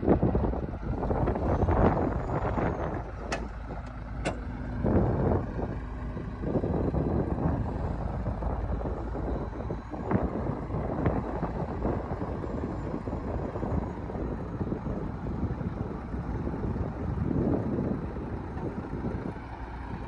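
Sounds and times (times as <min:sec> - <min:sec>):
heavy diesel machinery running: 0:00.0 - 0:20.0.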